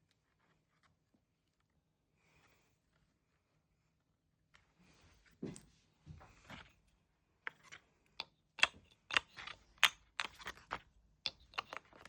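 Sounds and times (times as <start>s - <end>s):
wooden toy clicks and knocks: 7.5s - 12.0s.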